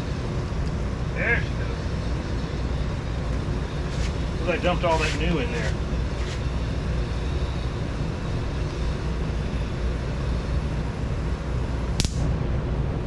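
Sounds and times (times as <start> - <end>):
sharp click: 12.0 - 12.3.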